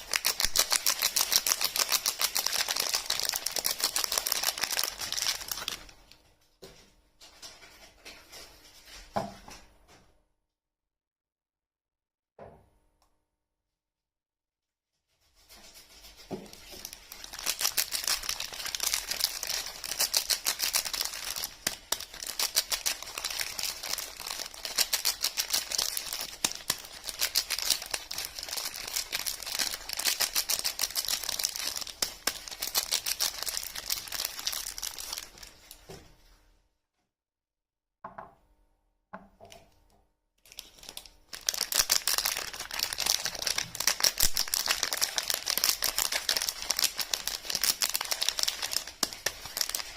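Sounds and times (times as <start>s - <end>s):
wrappers crinkling and tearing: 0.0s - 6.2s, 15.4s - 35.9s, 40.4s - 49.9s.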